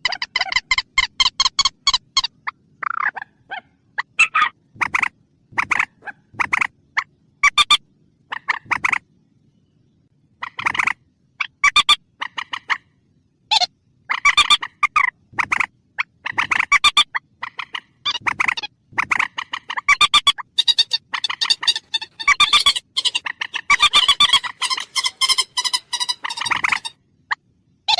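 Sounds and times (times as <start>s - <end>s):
rail bird harsh clucking call: 0.0s - 9.0s, 10.4s - 12.9s, 13.5s - 27.0s.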